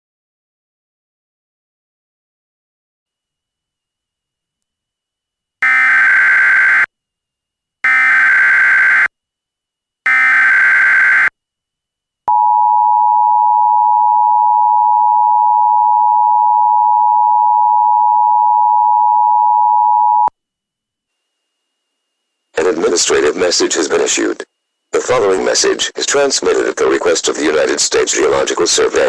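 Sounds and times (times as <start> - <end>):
harsh buzzing digital data bursts: 5.6 - 6.9, 7.9 - 9.1, 10.1 - 11.3
steady two-tone attention signal: 10.1 - 11.3.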